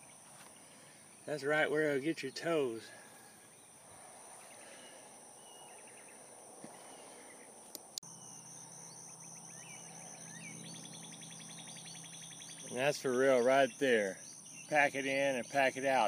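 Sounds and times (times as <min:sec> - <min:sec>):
bird chirps: 0:04.4 - 0:16.0
insect trilling: 0:08.0 - 0:16.0.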